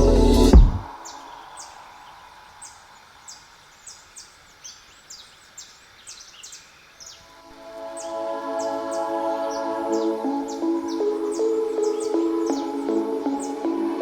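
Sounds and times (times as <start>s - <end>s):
music: 0.0s - 0.9s, 7.5s - 14.0s
faint hiss: 0.0s - 14.0s
faint bird chirps: 0.9s - 7.3s.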